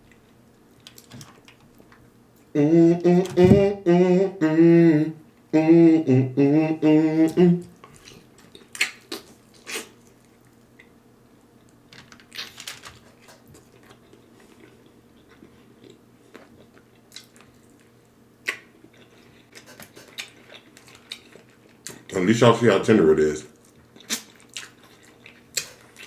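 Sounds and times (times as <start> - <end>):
person chewing meat: 7.7 - 11.0, 13.0 - 22.1, 23.6 - 26.0.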